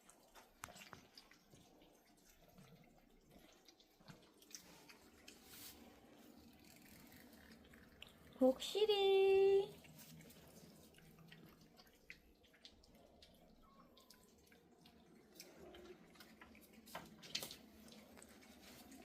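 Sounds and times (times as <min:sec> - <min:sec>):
cat eating wet clicks: 0:09.7 - 0:19.0.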